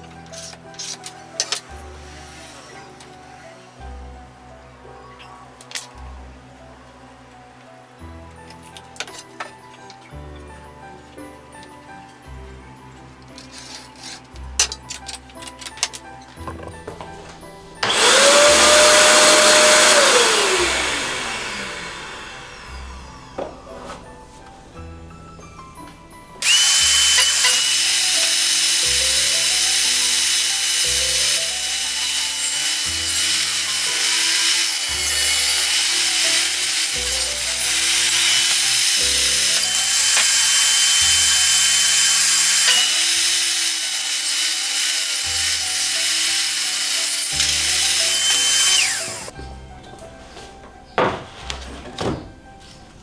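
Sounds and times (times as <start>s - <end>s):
background music: 0.0s - 53.0s
electric power tool whining: 17.8s - 24.1s, 26.4s - 49.4s.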